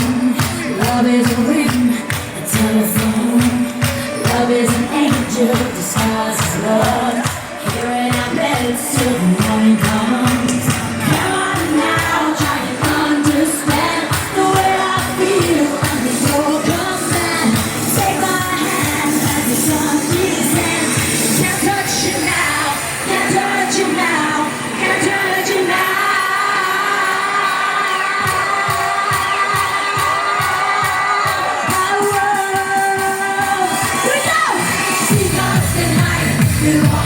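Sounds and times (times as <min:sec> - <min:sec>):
live dance-pop music with singing: 0:00.0 - 0:37.0.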